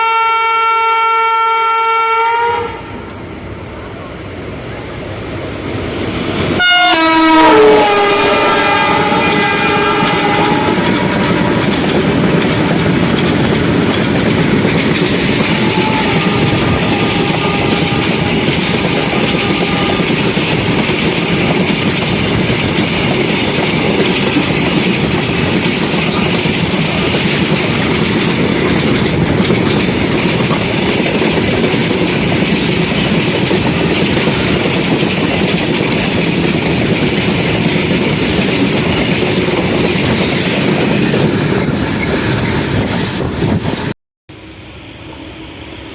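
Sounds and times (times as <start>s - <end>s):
train horn: 0.0s - 3.0s, 6.6s - 11.8s, 15.4s - 20.4s
train wheels clattering over rail joints: 9.4s - 43.9s.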